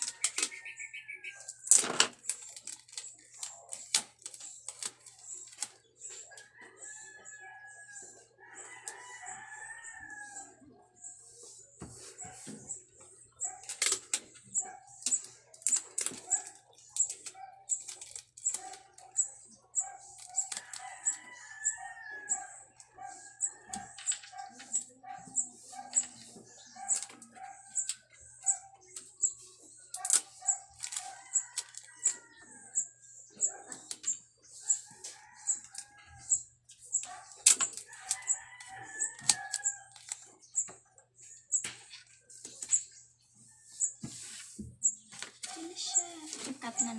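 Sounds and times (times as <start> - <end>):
paper and tape rustling: 1.4 - 6.4, 13.4 - 21.3, 23.0 - 32.2, 36.7 - 40.7, 44.0 - 46.9
roosters crowing: 6.4 - 10.8, 19.8 - 28.6, 30.4 - 33.6, 37.8 - 40.0.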